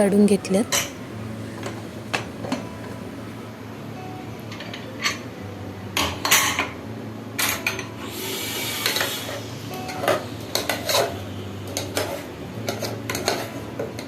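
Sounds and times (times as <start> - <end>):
steady low hum: 0.0 - 4.4.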